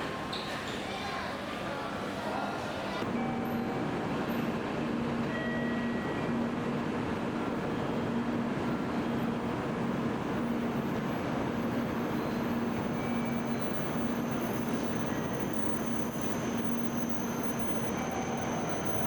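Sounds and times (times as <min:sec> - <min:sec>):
train noise at station: 0:00.0 - 0:19.0.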